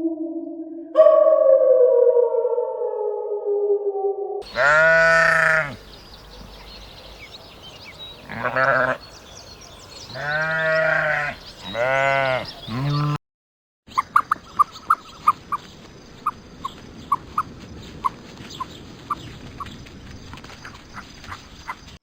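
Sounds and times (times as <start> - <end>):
farm animal bleating: 4.4 - 5.8, 8.2 - 9.1, 10.1 - 13.2.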